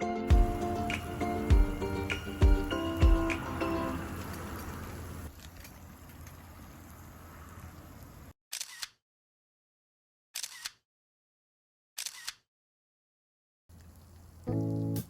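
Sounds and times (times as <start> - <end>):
faint outdoor ambience: 0.3 - 8.3, 13.7 - 15.0
camera shutter double click: 8.5 - 9.0, 10.4 - 10.8, 12.0 - 12.5.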